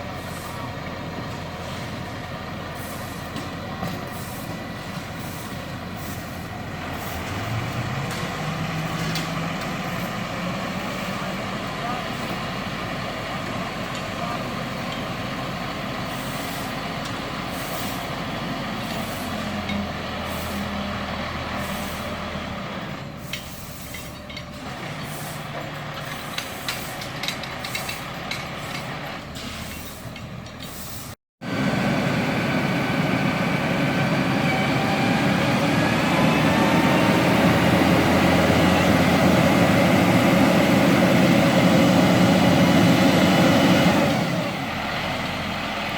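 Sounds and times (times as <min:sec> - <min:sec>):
heavy truck engine running: 0:00.0 - 0:45.9
rising machine whine: 0:31.6 - 0:44.2.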